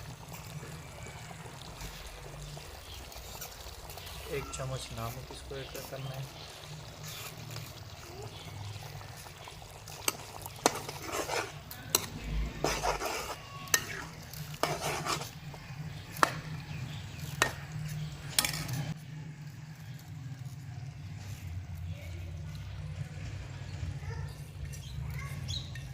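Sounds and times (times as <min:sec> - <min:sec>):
food sizzling: 0:00.0 - 0:23.6
spoon scraping a pot: 0:02.9 - 0:08.4, 0:09.4 - 0:19.0.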